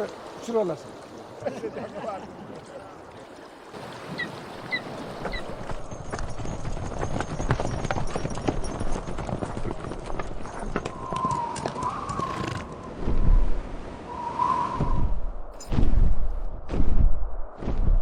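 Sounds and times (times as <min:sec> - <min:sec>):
horse hooves clip-clopping: 0:03.8 - 0:12.9.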